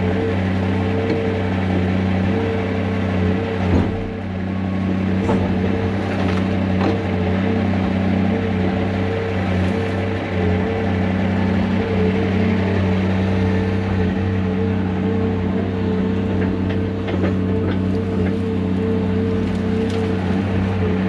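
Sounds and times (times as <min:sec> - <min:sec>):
heavy diesel engine running: 0:00.0 - 0:21.0
knocks and clunks: 0:03.6 - 0:07.1, 0:16.2 - 0:18.5.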